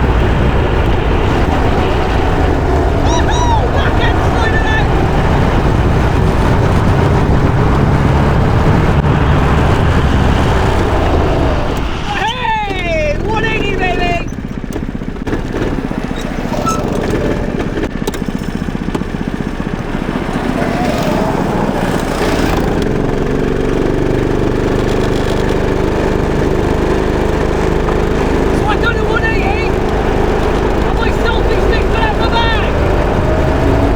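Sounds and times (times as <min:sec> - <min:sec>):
wind on microphone: 0:00.0 - 0:12.2
go-kart engine rumble: 0:00.0 - 0:33.9.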